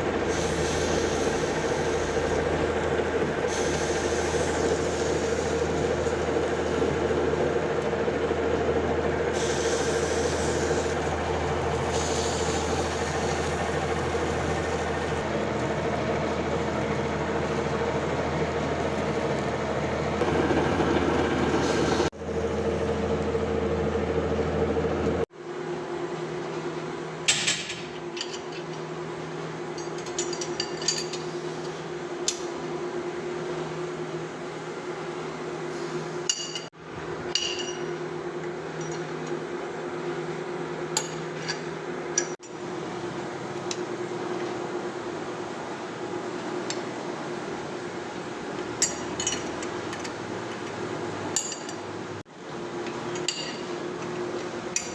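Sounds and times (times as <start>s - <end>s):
metal lathe humming: 0.0s - 25.2s.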